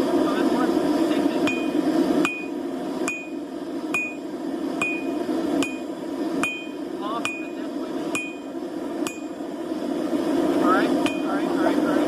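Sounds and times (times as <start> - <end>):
hammer blows on anvil: 4.8 - 7.5, 8.1 - 8.4.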